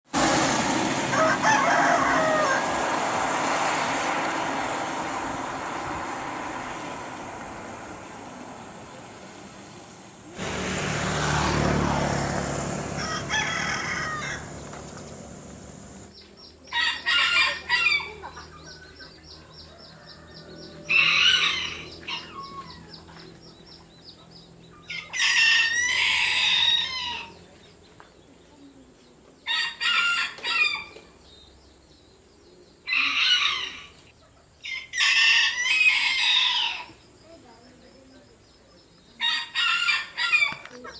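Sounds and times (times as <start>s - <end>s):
loud rushing noise falling in pitch: 0.1s - 8.8s, 10.3s - 16.1s
roosters crowing: 0.2s - 7.2s, 10.4s - 24.2s, 24.8s - 27.5s, 29.4s - 31.2s, 32.8s - 37.1s, 39.2s - 40.9s.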